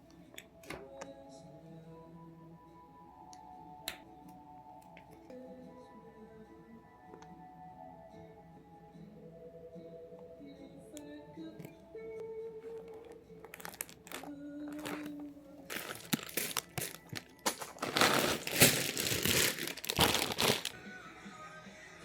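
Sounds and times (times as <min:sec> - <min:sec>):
soft background music: 0:00.0 - 0:22.0
plastic bags crinkling: 0:12.6 - 0:20.8.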